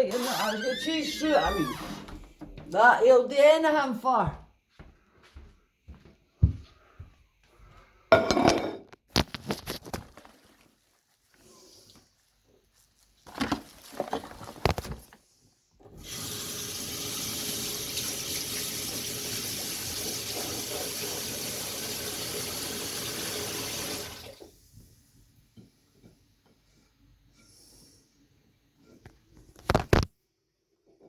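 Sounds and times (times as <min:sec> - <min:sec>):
water tap running: 0:15.9 - 0:24.5.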